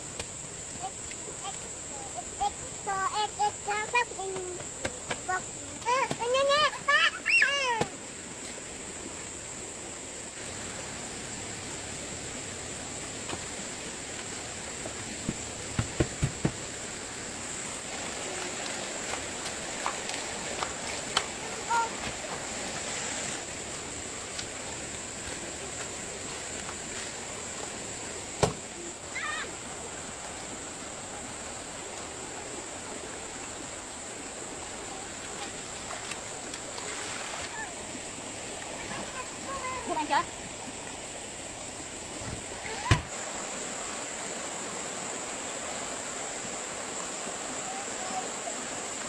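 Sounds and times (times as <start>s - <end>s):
dull knocks: 15.2s - 16.7s, 28.4s - 28.6s.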